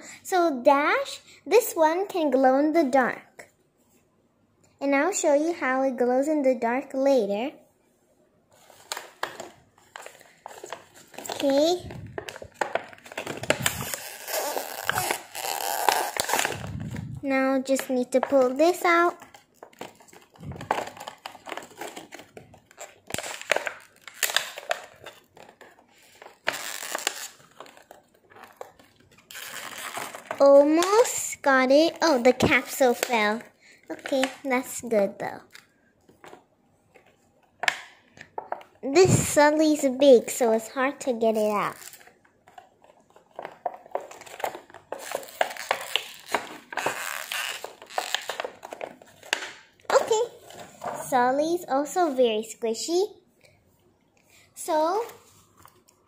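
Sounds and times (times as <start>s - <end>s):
plastic packaging crinkling: 8.5s - 34.7s, 41.3s - 50.7s.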